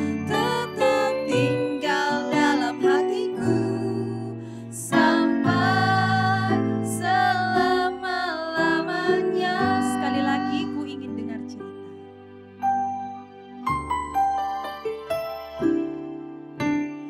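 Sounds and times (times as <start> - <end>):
woman singing: 0.0 - 11.5
instrumental accompaniment: 5.0 - 17.0.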